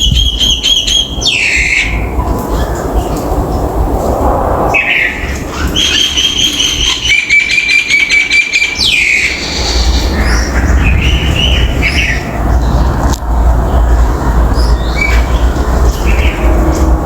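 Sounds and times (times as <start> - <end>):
steady low rumble: 0.0 - 7.1, 8.7 - 17.0.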